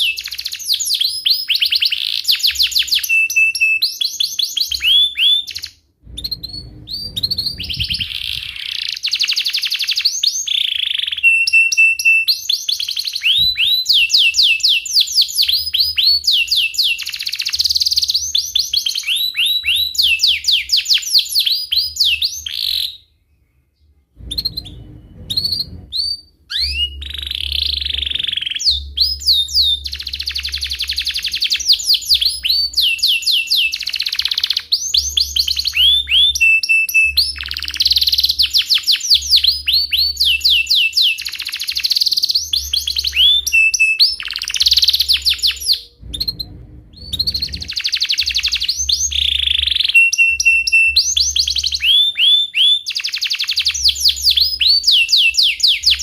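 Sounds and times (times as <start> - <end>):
canary singing: 0.0 - 56.0.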